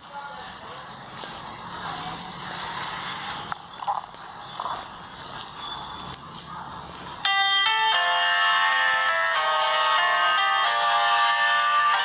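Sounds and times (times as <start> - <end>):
high pulsing animal chirp: 0.9 - 7.3.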